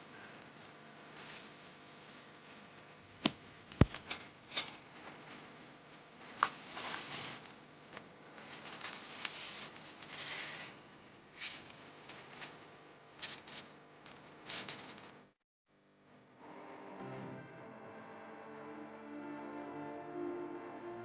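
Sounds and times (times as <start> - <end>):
soft rustling: 5.1 - 7.6, 8.4 - 10.8.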